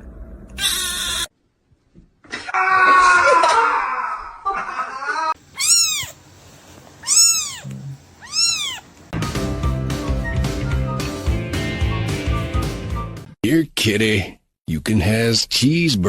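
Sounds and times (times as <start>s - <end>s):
cat meowing: 0.6s - 1.3s, 5.5s - 6.2s, 7.0s - 8.9s.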